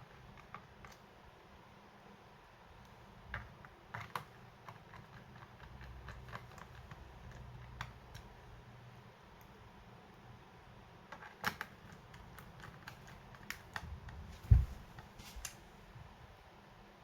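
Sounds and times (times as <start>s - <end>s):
loud dull thump: 14.4s - 14.8s.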